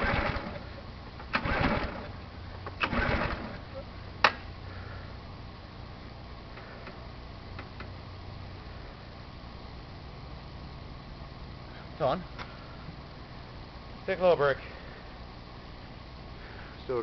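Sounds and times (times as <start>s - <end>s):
pull-cord engine whirring rattle: 0.0s - 3.8s.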